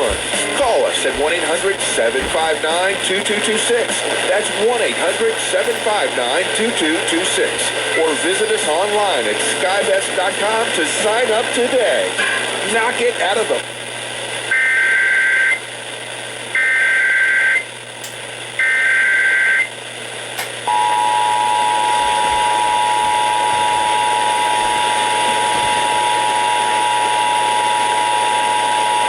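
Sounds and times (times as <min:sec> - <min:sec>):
two-tone attention signal: 0:20.7 - 0:24.4.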